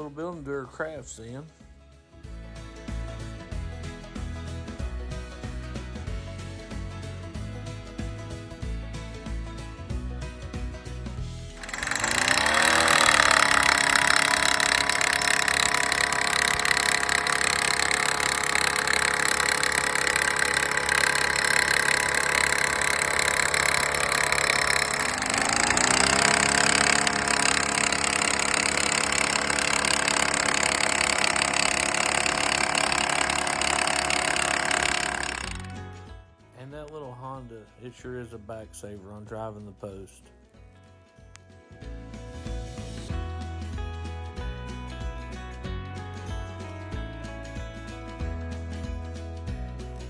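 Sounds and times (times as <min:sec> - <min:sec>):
post driver engine revving: 0:11.5 - 0:35.8.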